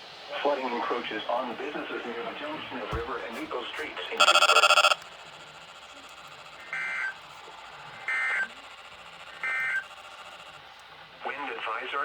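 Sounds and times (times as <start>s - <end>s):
faint radio hiss: 0.0s - 12.0s
digital data tone bursts: 4.2s - 10.7s.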